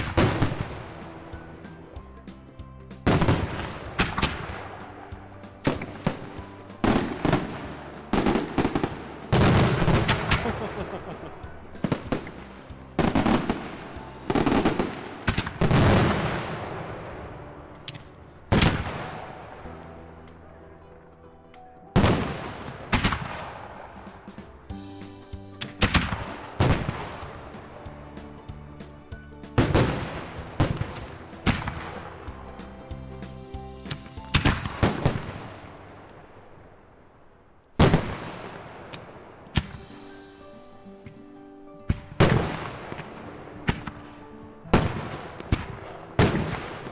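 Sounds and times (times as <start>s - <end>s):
fireworks loud bangs: 0.0s - 1.5s, 5.7s - 17.3s, 25.7s - 27.8s, 34.0s - 36.4s, 37.8s - 39.9s
music: 0.0s - 36.9s, 37.7s - 46.9s.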